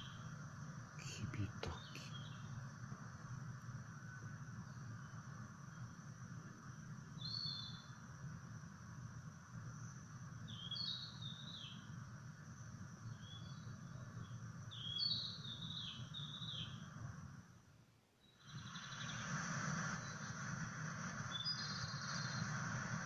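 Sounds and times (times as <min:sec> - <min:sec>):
low hiss and hum: 0:00.0 - 0:23.0
bird singing warbled phrases: 0:01.0 - 0:02.6, 0:07.2 - 0:08.0, 0:10.5 - 0:12.0, 0:13.0 - 0:16.9.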